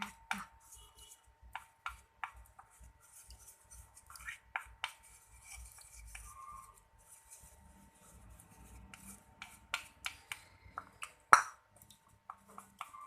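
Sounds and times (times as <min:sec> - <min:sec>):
utensil scraping paste: 0:02.7 - 0:10.3.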